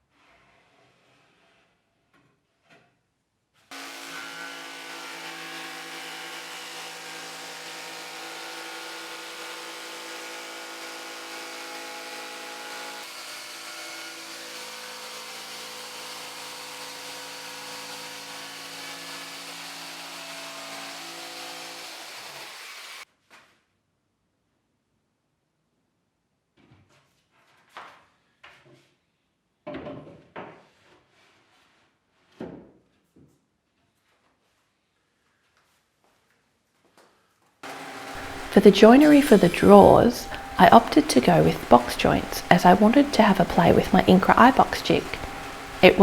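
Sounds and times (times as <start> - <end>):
electric power tool running: 3.7 - 23.0, 37.6 - 46.0.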